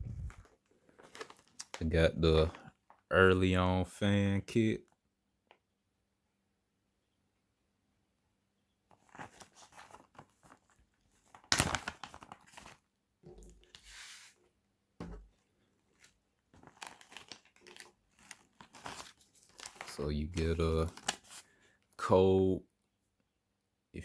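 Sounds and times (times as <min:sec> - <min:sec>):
packaging crinkling and tearing: 0:00.3 - 0:01.8, 0:09.0 - 0:12.8, 0:15.9 - 0:21.5.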